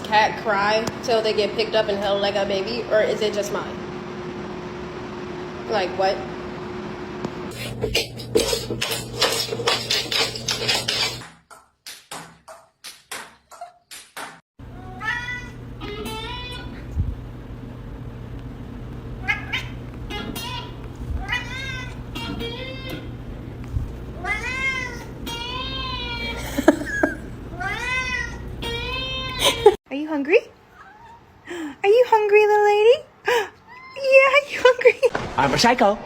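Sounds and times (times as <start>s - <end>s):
cat meowing: 14.7s - 16.8s, 19.2s - 23.1s, 24.2s - 26.5s, 27.5s - 29.6s.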